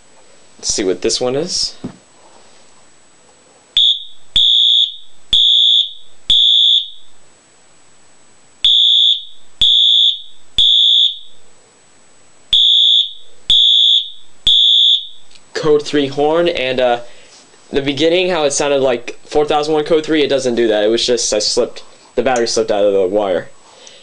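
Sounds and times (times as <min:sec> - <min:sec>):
fire alarm horn blasts: 0:03.8 - 0:07.1, 0:08.6 - 0:11.4, 0:12.5 - 0:15.2.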